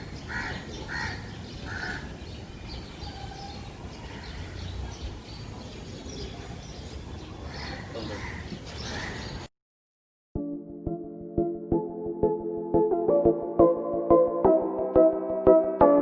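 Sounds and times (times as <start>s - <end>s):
birds calling: 0.0s - 9.5s.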